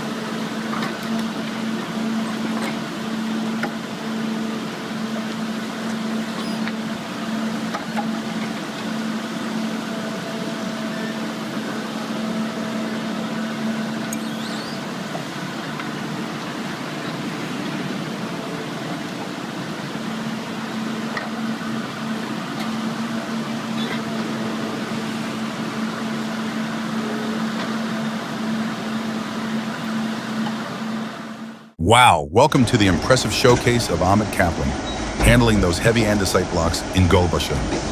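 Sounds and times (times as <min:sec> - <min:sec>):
heavy machine engine running: 0:32.4 - 0:37.9.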